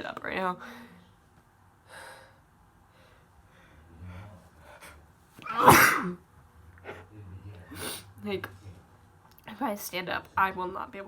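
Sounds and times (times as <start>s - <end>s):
woman sneezing loudly: 5.4s - 6.2s.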